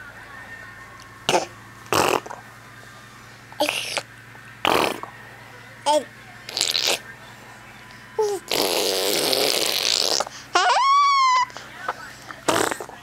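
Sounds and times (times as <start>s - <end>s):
fart-like raspberry noises: 1.3s - 2.4s, 3.6s - 5.1s, 6.5s - 7.0s, 8.5s - 10.4s, 12.5s - 13.0s.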